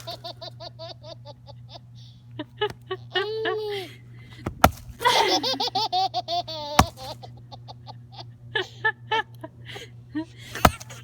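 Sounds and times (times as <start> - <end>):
axe splitting wood: 4.4 - 5.2, 6.8 - 7.2, 10.6 - 11.0
baby belly-laughing: 5.0 - 8.3.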